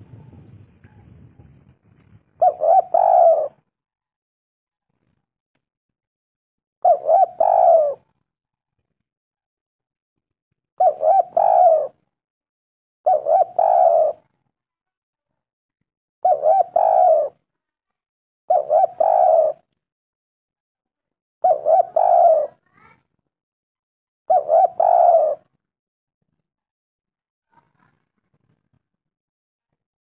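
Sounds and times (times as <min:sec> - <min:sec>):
dove cooing: 0:02.3 - 0:03.6, 0:06.8 - 0:08.1, 0:10.8 - 0:12.0, 0:13.1 - 0:14.3, 0:16.2 - 0:17.4, 0:18.5 - 0:19.7, 0:21.4 - 0:22.7, 0:24.3 - 0:25.5.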